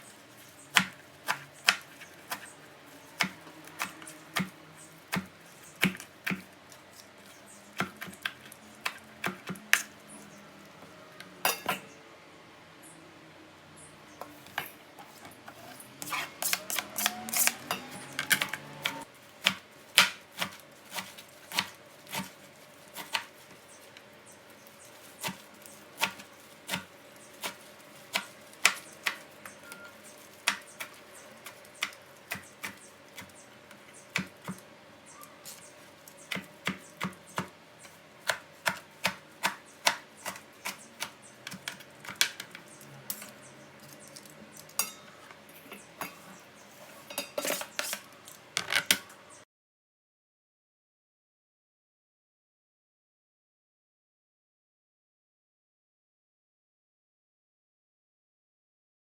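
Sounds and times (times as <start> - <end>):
knife chopping on a cutting board: 0.7 - 2.5, 3.1 - 6.5, 7.8 - 9.9, 16.0 - 23.6, 25.2 - 33.3, 34.0 - 34.6, 35.4 - 44.0.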